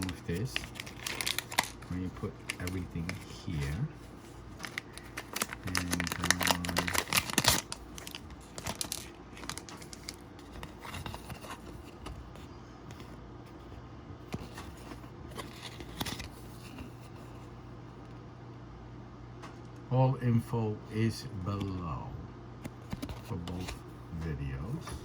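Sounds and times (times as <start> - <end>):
plastic packaging crinkling: 0.0 - 12.2, 14.4 - 16.8.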